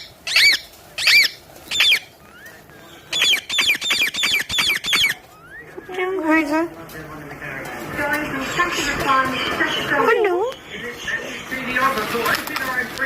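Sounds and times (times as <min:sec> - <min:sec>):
parrot squawking: 0:00.0 - 0:05.9.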